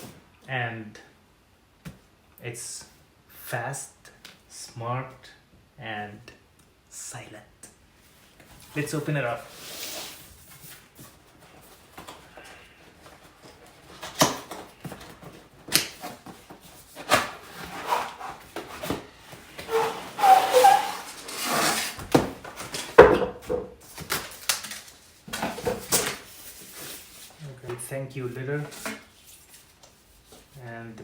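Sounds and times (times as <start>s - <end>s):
cardboard rustling and scraping: 8.1s - 30.6s
short squeaks: 19.6s - 21.9s.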